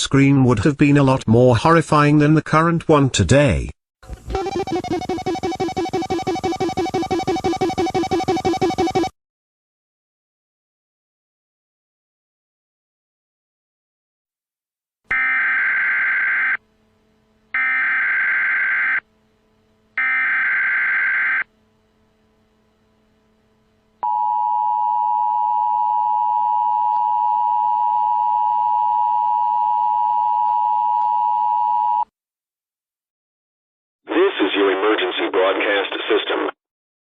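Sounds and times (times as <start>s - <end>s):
buzzing digital data bursts: 4.3s - 9.1s
two-tone attention signal: 4.3s - 9.1s.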